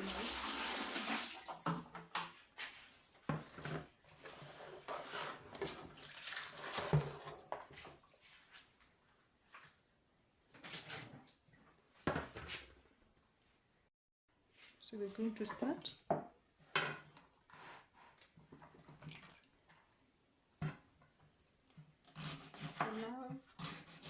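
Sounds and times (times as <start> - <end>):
rustling or splashing: 4.2 - 9.8.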